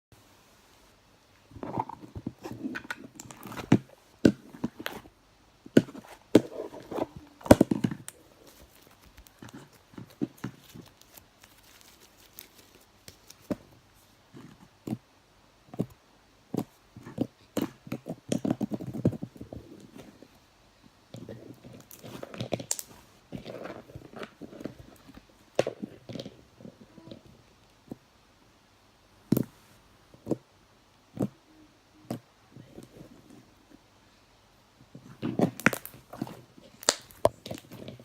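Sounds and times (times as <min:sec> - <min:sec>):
slime squelching and popping: 0:35.3 - 0:38.0.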